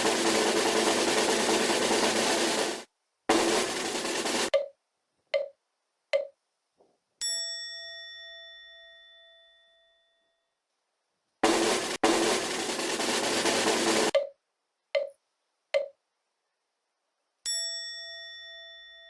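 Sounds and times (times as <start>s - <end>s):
rush like drum roll: 0.0s - 4.5s, 11.4s - 14.1s.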